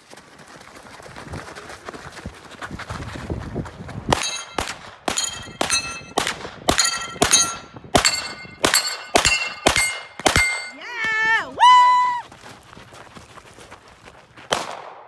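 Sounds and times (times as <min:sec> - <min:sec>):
rapid gunfire: 0:04.1 - 0:10.8
bullets ringing on steel plates: 0:04.2 - 0:11.0.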